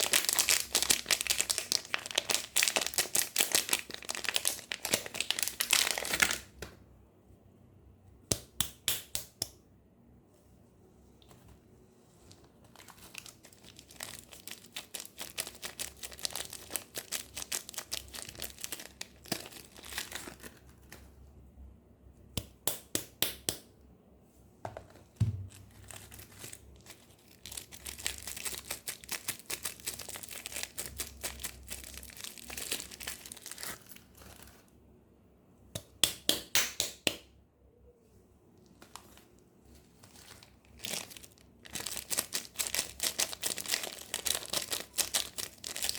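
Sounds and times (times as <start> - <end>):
packaging crinkling and tearing: 0.0 - 6.6, 12.4 - 21.1, 25.4 - 34.7, 39.9 - 45.9
soft thud: 25.2 - 25.6.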